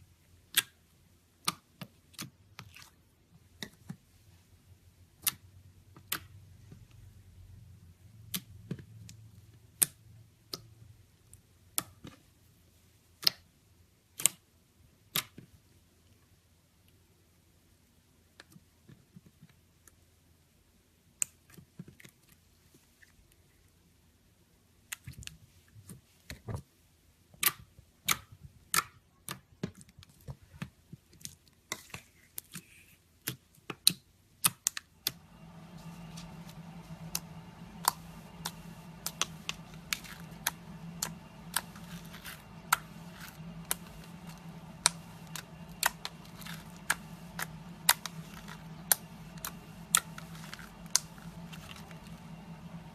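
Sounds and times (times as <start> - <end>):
steady low hum: 35.0 - 52.9.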